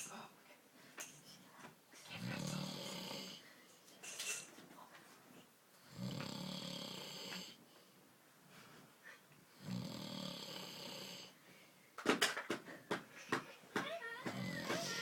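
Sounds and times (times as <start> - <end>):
man snoring: 2.2 - 3.4, 5.9 - 7.5, 9.6 - 11.3.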